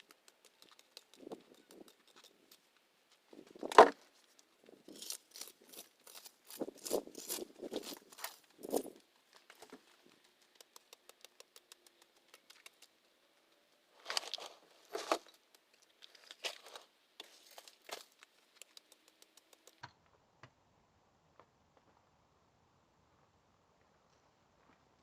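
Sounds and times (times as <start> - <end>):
dry weeds crinkling and tearing: 3.3 - 10.7, 14.0 - 19.1.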